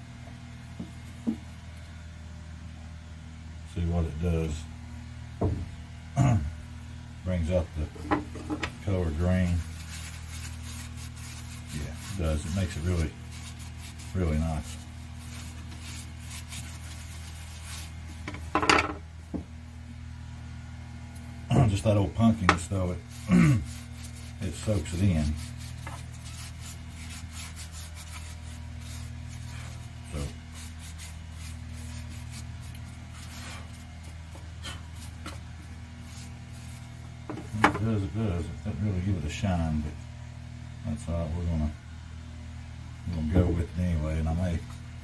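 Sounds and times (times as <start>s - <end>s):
steady low hum: 0.0s - 45.0s
rag rubbing on wood: 7.4s - 18.9s, 21.8s - 38.0s
scrape: 9.2s - 18.0s, 23.1s - 35.4s.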